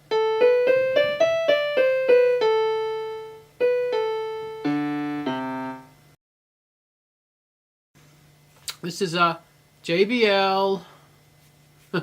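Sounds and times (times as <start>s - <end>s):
electronic keyboard piano notes: 0.0s - 6.0s.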